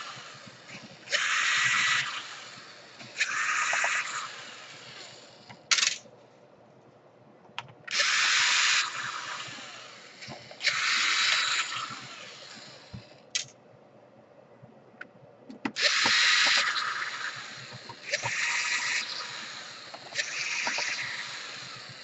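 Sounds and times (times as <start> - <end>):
electric drill-driver running: 0.0 - 5.9, 7.9 - 13.0, 15.8 - 22.0.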